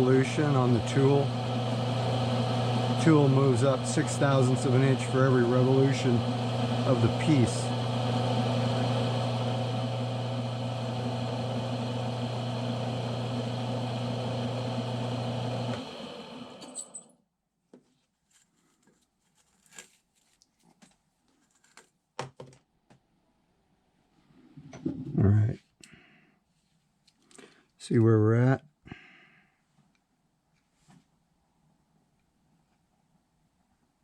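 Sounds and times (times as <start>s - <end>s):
lathe motor hum and whir: 0.0s - 16.9s
machine spinning down: 0.0s - 16.9s.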